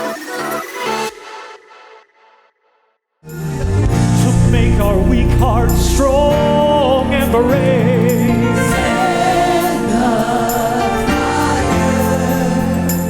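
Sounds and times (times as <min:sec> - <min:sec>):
band accompaniment: 0:03.3 - 0:13.0
voices singing held notes: 0:03.3 - 0:13.0.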